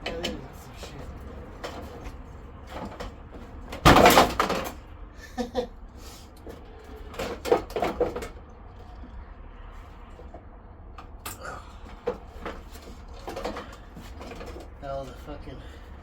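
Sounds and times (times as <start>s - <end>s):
knocks of car parts handled: 1.6s - 4.8s.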